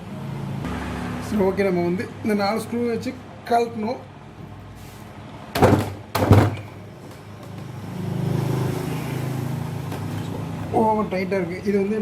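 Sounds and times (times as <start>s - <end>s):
sharp knocks: 5.5s - 7.8s.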